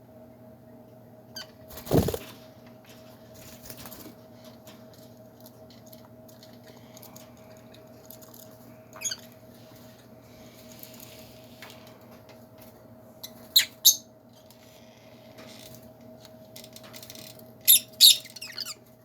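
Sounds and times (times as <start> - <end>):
birds scratching in a cage: 14.4 - 17.6
bird chirp: 17.7 - 18.8.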